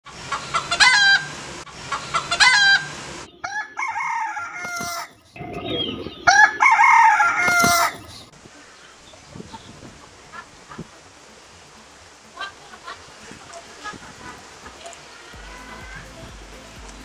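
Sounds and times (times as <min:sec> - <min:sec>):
rooster crowing: 0:02.1 - 0:05.1, 0:06.2 - 0:08.1.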